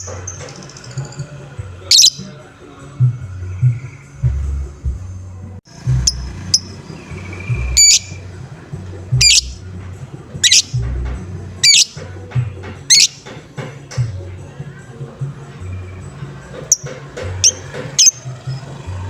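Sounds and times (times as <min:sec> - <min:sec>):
background music beat: 0:00.0 - 0:18.2
lovebird harsh calls: 0:01.8 - 0:02.4, 0:06.0 - 0:08.3, 0:09.1 - 0:09.6, 0:10.4 - 0:11.0, 0:11.6 - 0:12.0, 0:12.8 - 0:13.4, 0:16.7 - 0:18.7
short bird chirps: 0:01.9 - 0:02.3, 0:07.8 - 0:08.2, 0:09.2 - 0:09.6, 0:11.6 - 0:11.9, 0:12.9 - 0:13.2.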